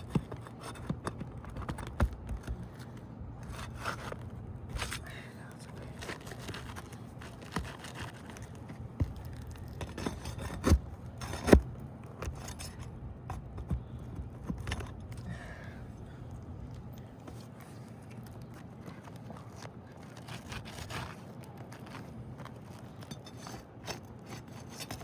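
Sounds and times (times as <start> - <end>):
scraping on roof shingles: 5.8 - 15.6.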